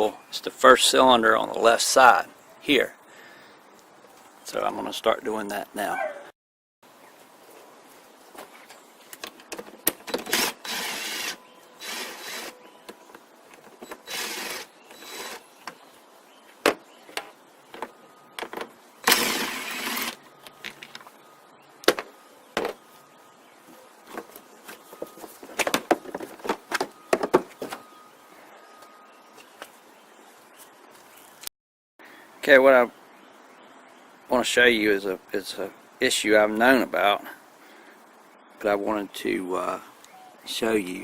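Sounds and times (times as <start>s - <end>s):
rasping bursts: 10.0s - 12.6s, 13.8s - 15.5s, 19.0s - 20.2s.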